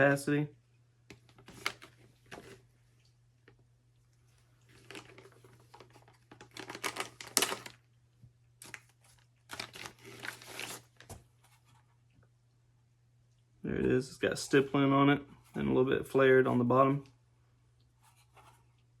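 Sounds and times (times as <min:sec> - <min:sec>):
packaging rustling: 0:01.3 - 0:02.6, 0:04.7 - 0:07.8, 0:08.6 - 0:11.3.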